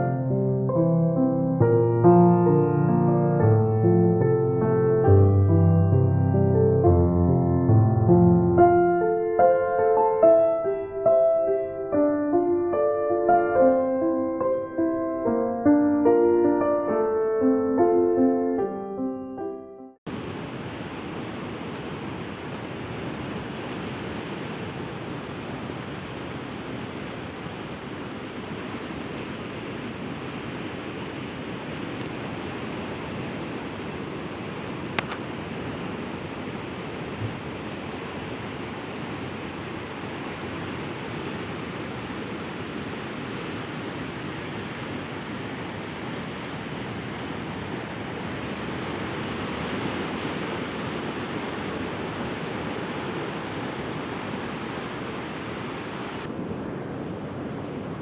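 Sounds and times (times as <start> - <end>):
sea waves breaking on shore: 20.1 - 58.0
faint click: 30.5 - 30.7, 32.0 - 32.2, 34.6 - 35.2.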